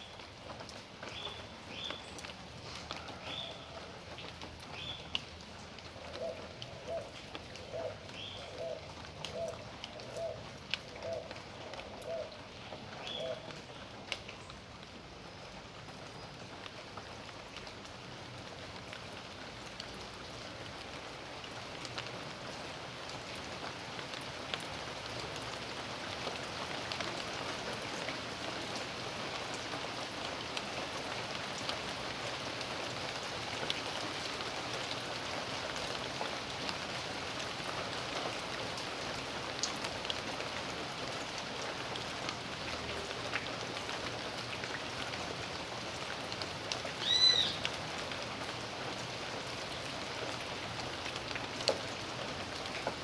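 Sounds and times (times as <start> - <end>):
rain drops ticking: 0.0 - 53.0.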